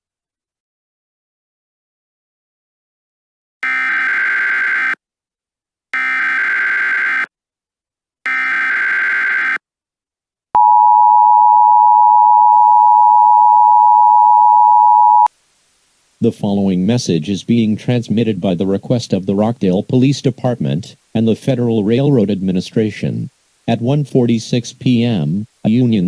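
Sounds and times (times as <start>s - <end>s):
screechy digital data tones: 8.3s - 9.6s
two-tone attention signal: 10.6s - 15.3s.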